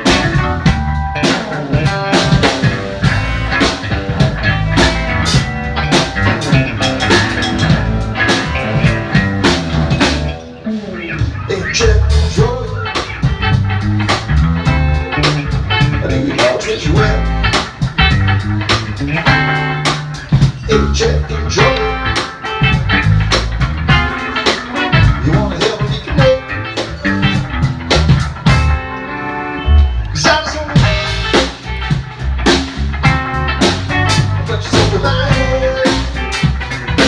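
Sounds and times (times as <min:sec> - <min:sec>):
bass and drum beat: 0:00.0 - 0:10.4, 0:11.2 - 0:28.9, 0:29.8 - 0:37.0
electric guitar: 0:00.0 - 0:37.0.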